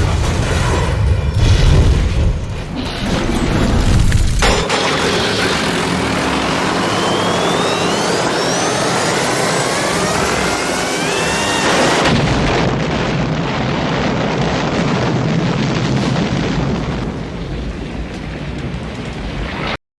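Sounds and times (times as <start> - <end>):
explosion: 0.0 - 7.2, 11.2 - 19.8
long noisy rumble: 0.0 - 19.8
rising whine: 4.1 - 12.7.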